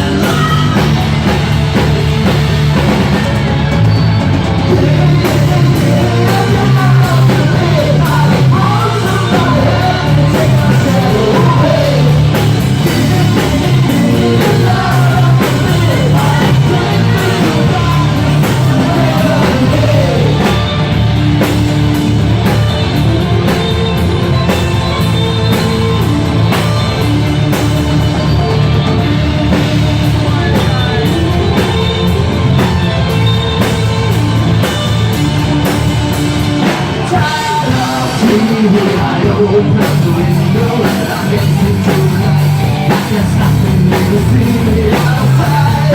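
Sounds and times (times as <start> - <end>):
person singing: 0.0 - 1.4, 4.6 - 20.9, 30.0 - 33.6, 37.0 - 45.9
live rock band playing: 0.0 - 45.9.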